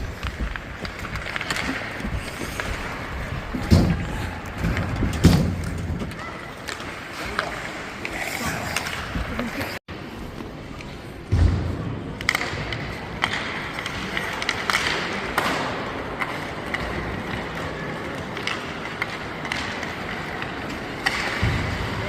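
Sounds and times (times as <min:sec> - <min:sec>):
skate blades scraping ice: 0:00.0 - 0:11.1
hockey sticks and puck clacking: 0:00.0 - 0:22.0.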